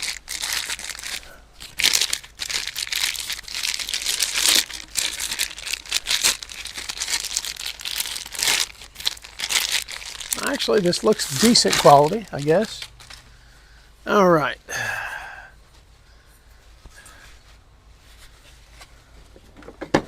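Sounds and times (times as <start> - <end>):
packaging crinkling and rustling: 0.0 - 13.4.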